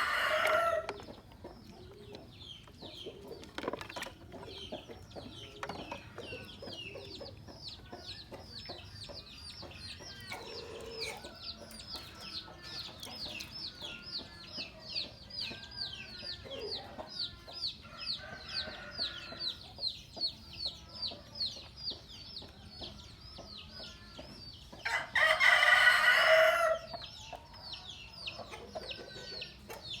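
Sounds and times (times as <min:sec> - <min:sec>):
rooster crowing: 0:00.0 - 0:00.9, 0:24.9 - 0:26.8
chicks peeping: 0:00.0 - 0:30.0.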